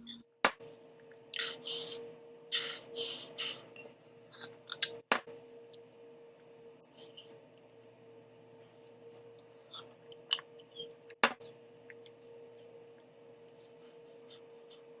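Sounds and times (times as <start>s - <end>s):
hissing mouth noises: 1.4s - 3.6s.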